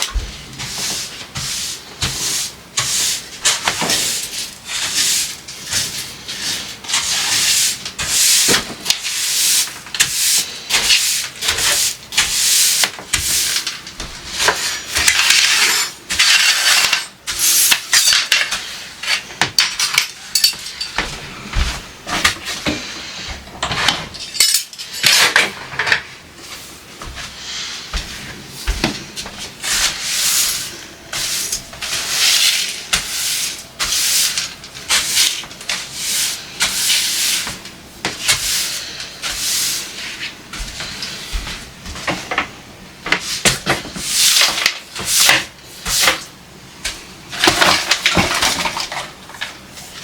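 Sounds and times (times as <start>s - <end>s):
rubbing and wiping: 0.2s - 13.6s, 26.4s - 41.7s
dishes and utensils clattering: 14.4s - 21.2s, 23.6s - 26.1s.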